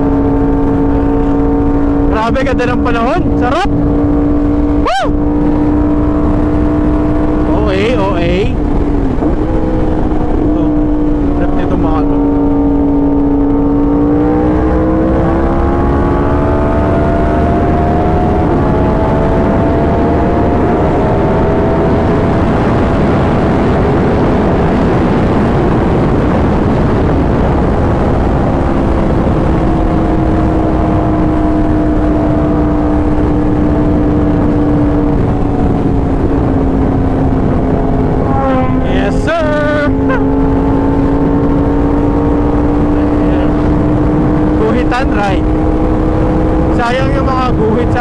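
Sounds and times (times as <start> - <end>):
motorcycle engine cruising: 0.0 - 48.0
wind rushing over microphone: 0.0 - 48.0.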